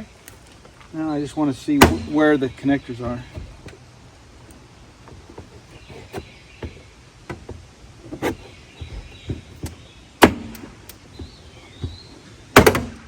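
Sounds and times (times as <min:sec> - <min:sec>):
clicking and knocking inside car door: 0:05.1 - 0:13.0.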